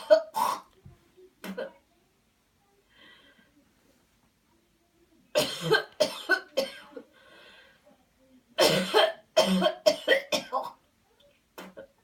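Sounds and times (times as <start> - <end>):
person coughing hard: 5.4 - 6.9, 8.6 - 10.8.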